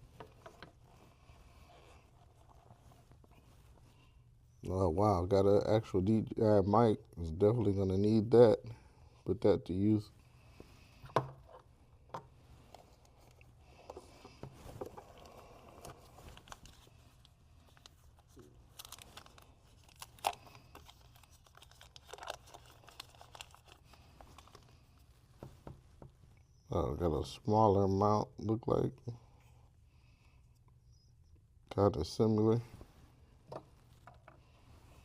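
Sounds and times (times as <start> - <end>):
packaging rustling and crinkling: 14.4 - 25.6.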